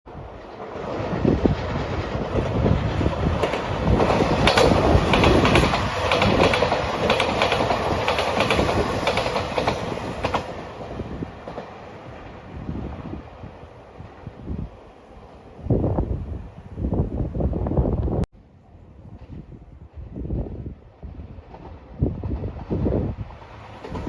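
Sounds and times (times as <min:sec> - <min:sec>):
train wheels clattering over rail joints: 0:00.5 - 0:12.0, 0:21.4 - 0:24.0.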